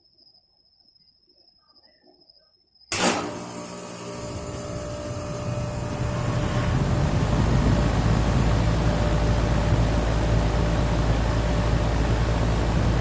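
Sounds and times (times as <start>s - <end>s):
air conditioner compressor humming: 2.9s - 13.0s
condenser fan: 2.9s - 13.0s.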